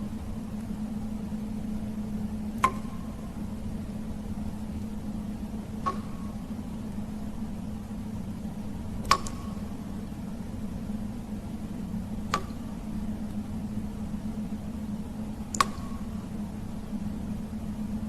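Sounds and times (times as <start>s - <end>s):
water drips in a cave: 2.5s - 3.2s, 5.8s - 6.4s, 9.0s - 9.7s, 12.3s - 13.4s, 15.5s - 16.2s.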